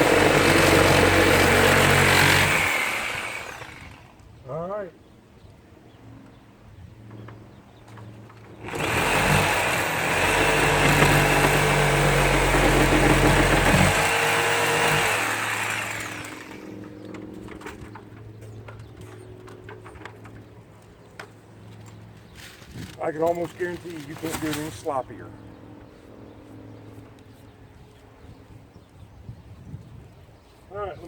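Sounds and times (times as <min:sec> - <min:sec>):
power tool motor running: 0:00.0 - 0:04.1, 0:08.6 - 0:17.0.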